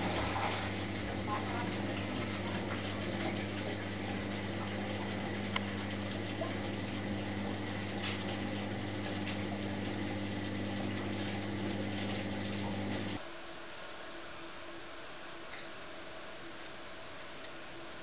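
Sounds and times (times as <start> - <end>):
washing machine pump humming: 0.0 - 13.2
water hissing: 0.0 - 13.2.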